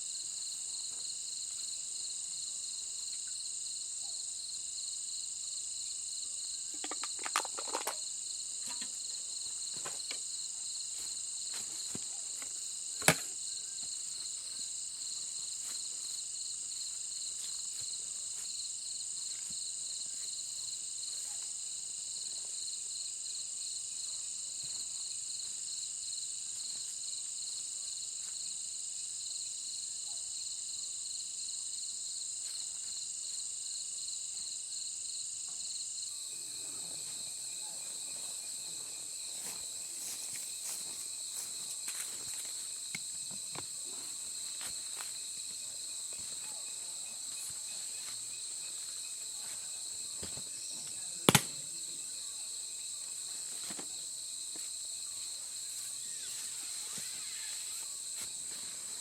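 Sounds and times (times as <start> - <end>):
insects chirping: 0.0 - 59.0
sharp knock: 51.3 - 51.5.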